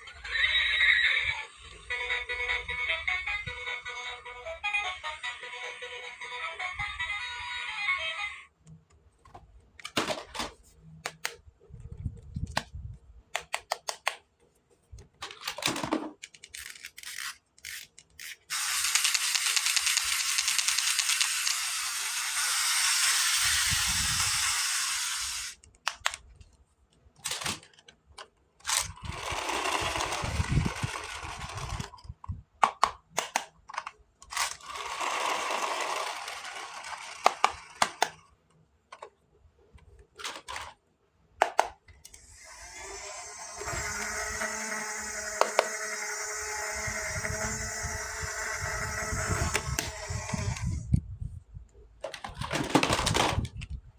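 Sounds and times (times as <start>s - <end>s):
plastic toy pieces clicking: 13.3s - 14.2s, 15.2s - 26.4s, 27.2s - 38.2s.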